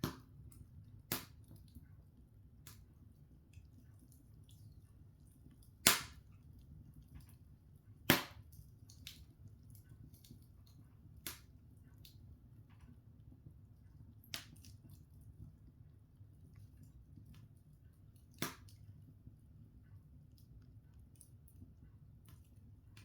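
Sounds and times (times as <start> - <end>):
wood fire crackling: 0.0 - 23.0
fire popping: 5.6 - 6.3, 8.1 - 9.3.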